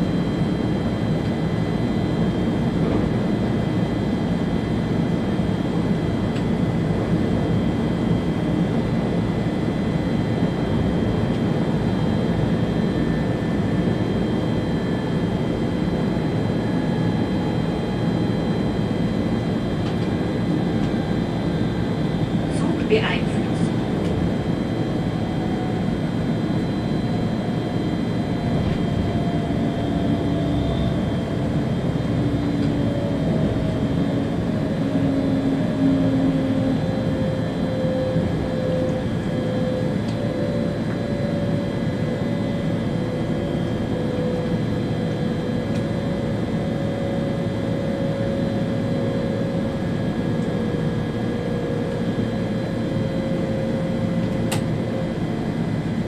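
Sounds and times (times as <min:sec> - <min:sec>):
train running at speed: 0:00.0 - 0:07.8, 0:17.6 - 0:41.1, 0:49.7 - 0:56.0.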